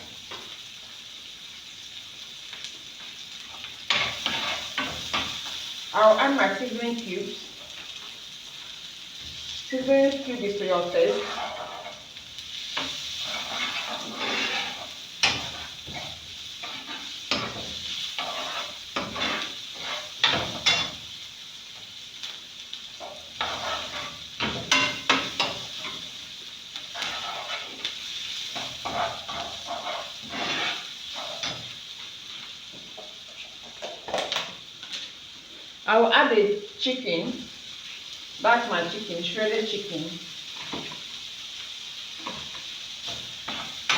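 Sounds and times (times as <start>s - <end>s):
onions sizzling in oil: 0.0s - 43.9s
spoon scraping a pan: 3.5s - 5.7s, 10.3s - 21.1s, 23.0s - 26.2s, 26.8s - 35.1s, 42.2s - 43.9s.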